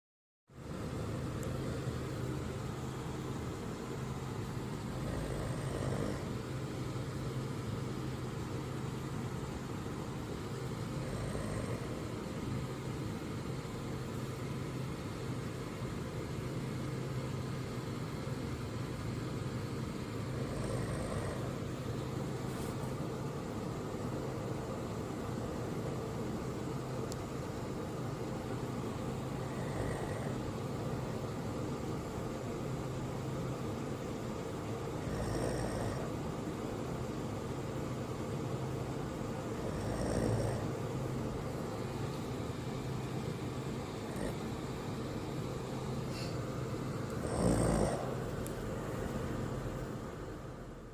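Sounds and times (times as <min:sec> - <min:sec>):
person snoring: 0:04.7 - 0:06.6, 0:10.6 - 0:12.5, 0:20.2 - 0:21.8, 0:29.2 - 0:30.5, 0:34.9 - 0:36.2, 0:39.5 - 0:40.9, 0:44.0 - 0:44.7, 0:47.1 - 0:48.3.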